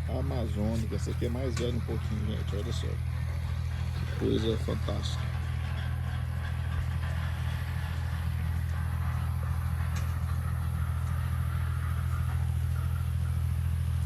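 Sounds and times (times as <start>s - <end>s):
engine humming steadily: 0.0s - 14.0s.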